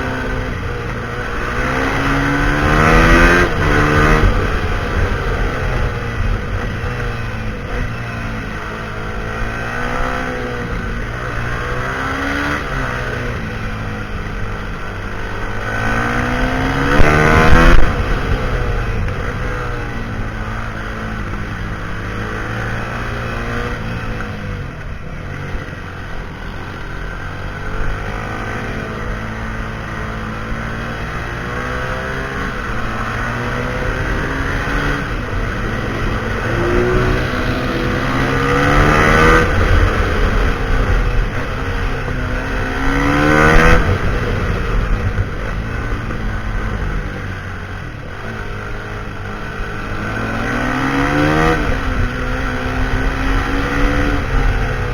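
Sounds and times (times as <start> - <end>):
motorcycle engine revving hard: 0.0 - 54.9.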